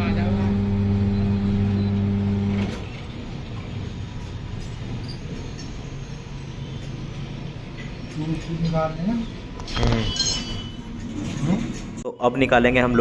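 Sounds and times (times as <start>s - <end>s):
electric motor humming: 0.0s - 3.0s.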